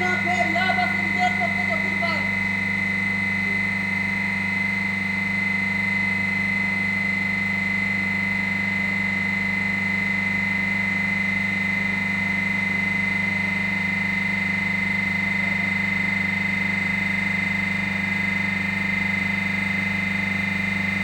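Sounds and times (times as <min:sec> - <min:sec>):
steady high tone: 0:00.0 - 0:04.0
compressor humming: 0:00.0 - 0:21.0.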